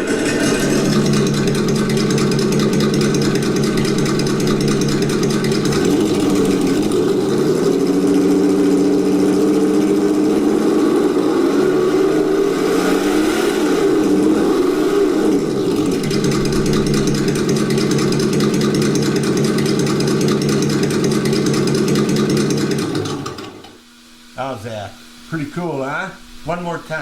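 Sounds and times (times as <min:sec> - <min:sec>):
simulated car engine revving: 0:00.0 - 0:23.6.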